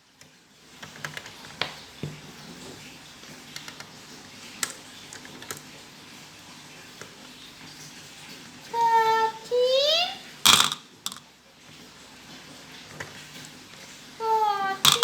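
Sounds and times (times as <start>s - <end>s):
plastic marble run clicks: 4.6s - 5.7s, 10.5s - 11.2s, 14.8s - 15.0s.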